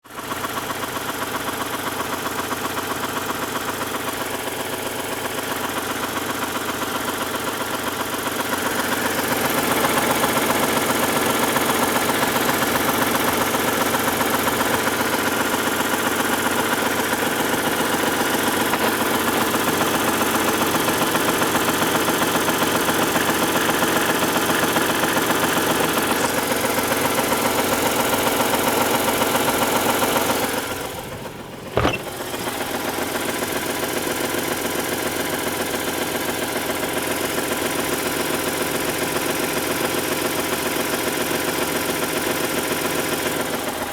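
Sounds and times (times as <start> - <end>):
engine running: 7.8 - 33.8.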